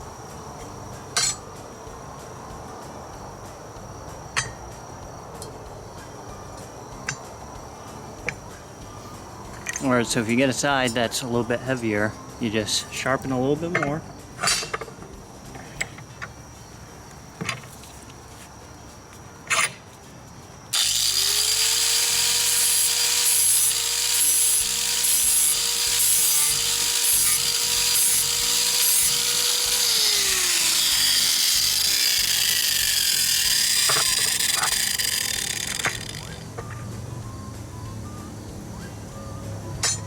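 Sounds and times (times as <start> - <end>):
electric grinder whining and grinding: 20.7 - 36.5.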